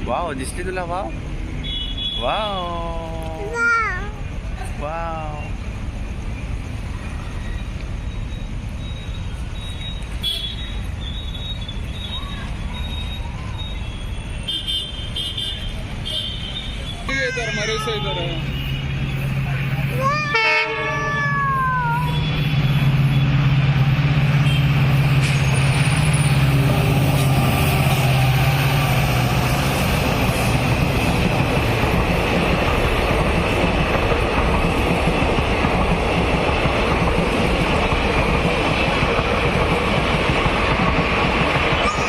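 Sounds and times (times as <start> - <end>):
train wheels on rails: 0.0 - 1.5, 2.2 - 42.0
locomotive engine drone: 17.1 - 42.0.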